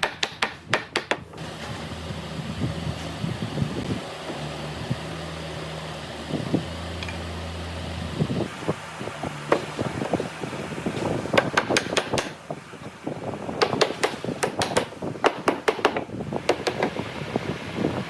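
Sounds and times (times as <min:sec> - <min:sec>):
sharp taps and knocks: 0:00.0 - 0:01.4, 0:11.4 - 0:12.4, 0:13.6 - 0:17.0.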